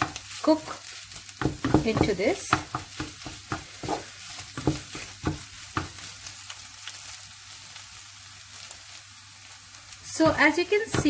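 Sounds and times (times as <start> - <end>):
spoon scraping a pan: 0.0 - 6.3
food sizzling: 0.0 - 11.0.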